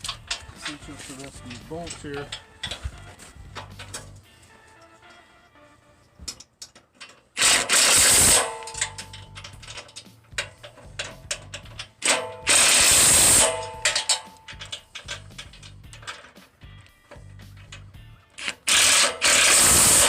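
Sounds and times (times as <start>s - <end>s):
ratchet wrench clicking: 6.3s - 20.0s.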